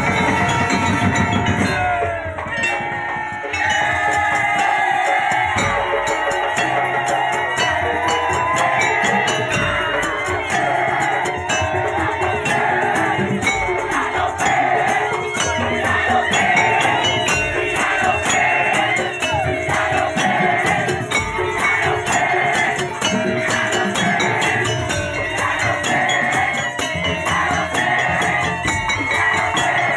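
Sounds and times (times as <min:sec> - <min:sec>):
live band music: 0:00.0 - 0:02.4
jingling shakers: 0:00.0 - 0:29.9.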